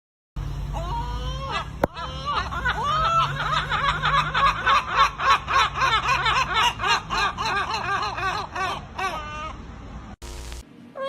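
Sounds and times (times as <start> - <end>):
person laughing: 1.2 - 9.2.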